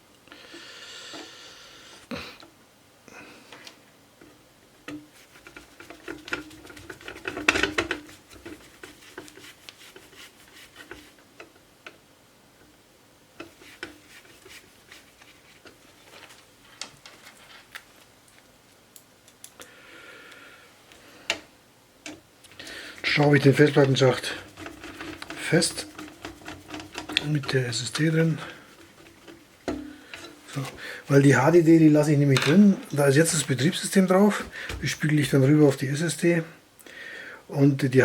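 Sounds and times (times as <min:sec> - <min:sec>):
metal rubbing: 0:05.1 - 0:11.2, 0:23.0 - 0:33.9.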